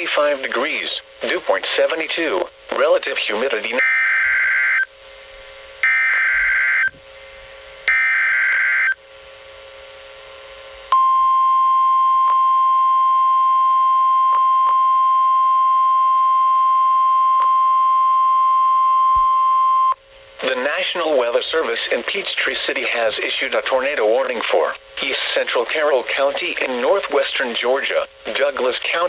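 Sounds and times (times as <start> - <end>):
faint static clicks: 0.9 - 3.6
steady warning alarm tone: 3.8 - 4.9, 5.8 - 7.0, 7.8 - 9.0.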